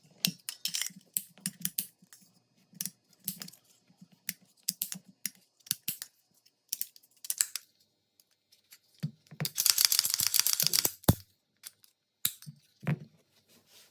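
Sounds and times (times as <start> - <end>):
pistol parts clicking: 9.5 - 12.4.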